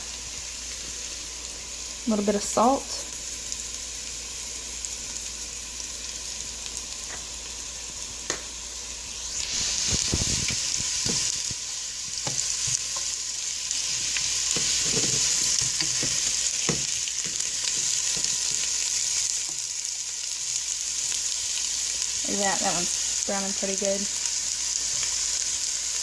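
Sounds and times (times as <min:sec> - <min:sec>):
potatoes sizzling in a frying pan: 0:00.0 - 0:26.0
utensil scraping a pan: 0:13.8 - 0:18.8.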